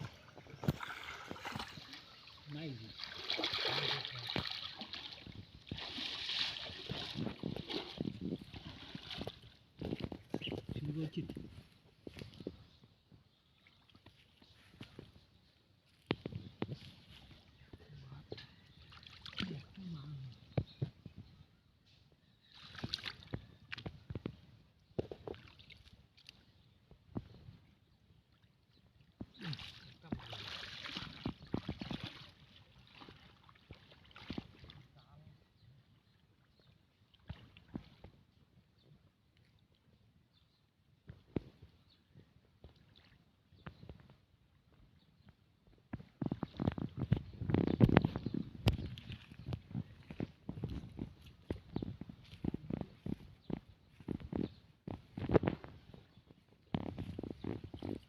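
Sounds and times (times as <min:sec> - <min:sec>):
pond water splashing: 0:00.0 - 0:11.0, 0:13.4 - 0:15.3, 0:16.1 - 0:20.5, 0:22.5 - 0:27.0, 0:28.2 - 0:35.1, 0:36.0 - 0:38.3, 0:42.6 - 0:44.1, 0:46.0 - 0:54.3.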